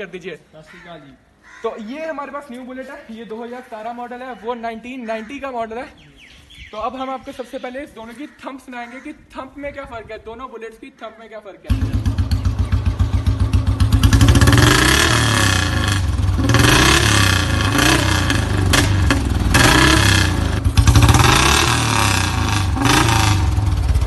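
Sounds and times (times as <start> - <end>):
motorcycle engine idling and revving: 11.7 - 24.0.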